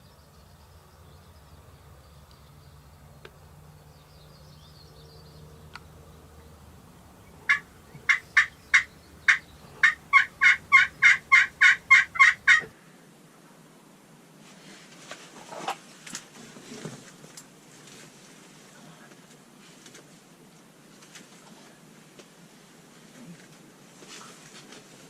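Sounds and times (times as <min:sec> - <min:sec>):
turkey yelps: 0:07.2 - 0:12.7.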